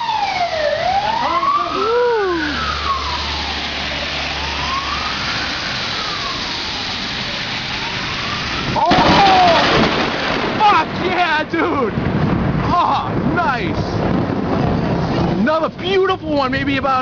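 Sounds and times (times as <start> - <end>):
emergency vehicle siren wailing: 0.0 - 11.0
rain hissing: 0.0 - 16.1
low rumble: 1.9 - 17.0.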